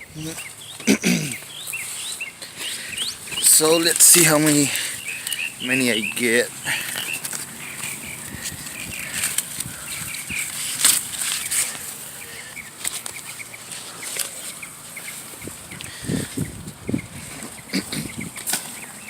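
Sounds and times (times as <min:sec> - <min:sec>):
corn leaves rustling: 0:00.0 - 0:19.0
corn stalks snapping: 0:10.4 - 0:11.9, 0:12.8 - 0:13.3, 0:18.4 - 0:18.8.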